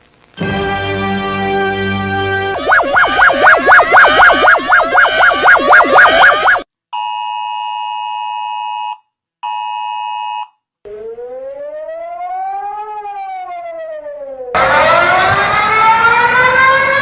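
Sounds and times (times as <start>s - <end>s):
rising and falling siren tone: 2.5s - 6.7s, 10.9s - 17.0s.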